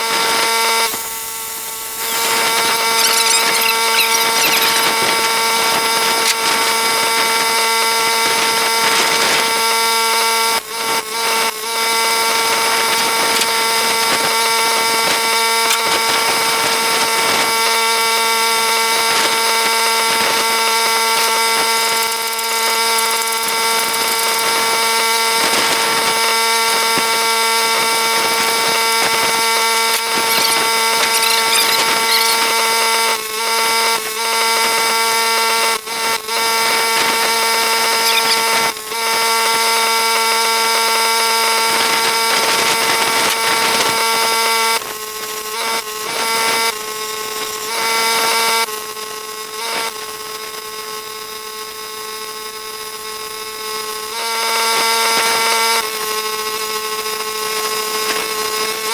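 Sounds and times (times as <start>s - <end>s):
power tool whining on steel: 0.0s - 44.8s.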